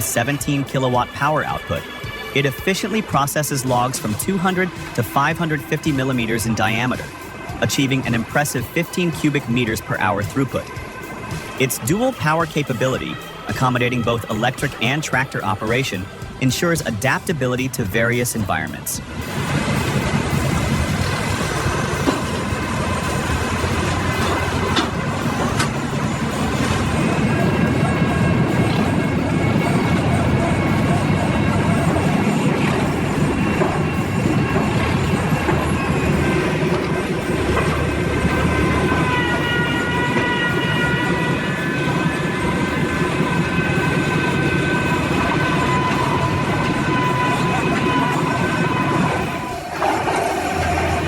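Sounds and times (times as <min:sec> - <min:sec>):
heavy machinery rumble: 0:19.0 - 0:51.0
high whining tones: 0:19.0 - 0:51.0.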